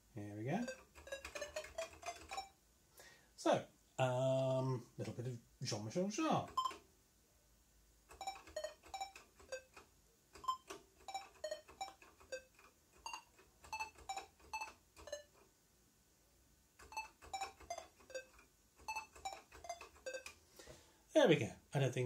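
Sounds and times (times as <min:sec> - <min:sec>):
electronic beeps playing melody: 0:00.6 - 0:02.6, 0:06.5 - 0:06.8, 0:08.2 - 0:09.7, 0:10.4 - 0:15.3, 0:16.9 - 0:20.3.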